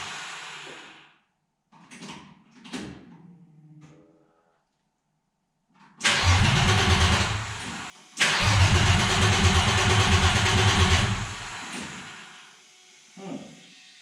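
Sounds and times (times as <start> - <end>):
engine cranking without starting: 6.0 - 12.2.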